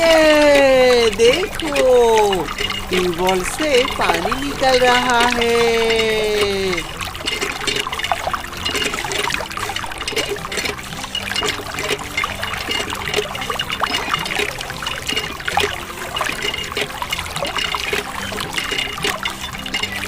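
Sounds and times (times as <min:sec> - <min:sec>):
water trickling into bucket: 0:00.0 - 0:20.0.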